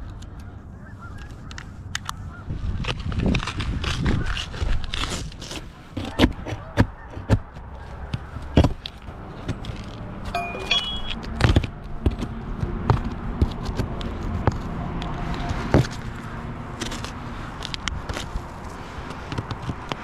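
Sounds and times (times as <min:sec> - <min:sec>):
brief high tone: 0:10.4 - 0:11.2.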